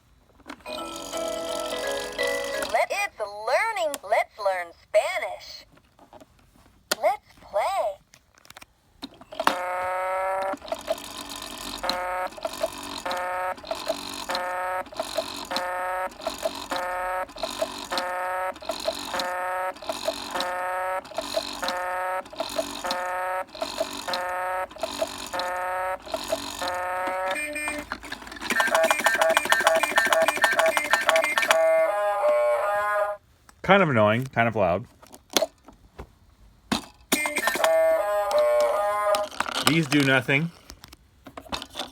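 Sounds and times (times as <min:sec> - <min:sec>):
toy electronic tune: 0:00.7 - 0:02.9, 0:09.3 - 0:33.2, 0:37.1 - 0:40.3.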